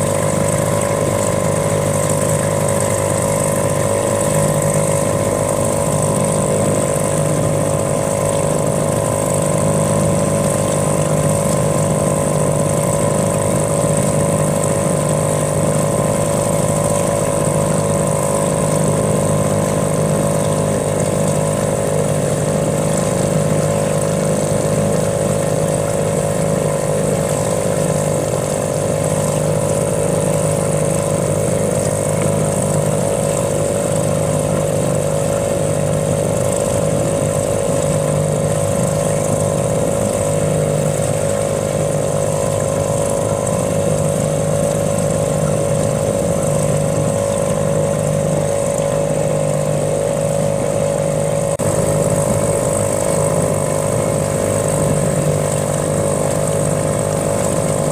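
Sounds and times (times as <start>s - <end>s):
small engine running: 0.0s - 57.9s.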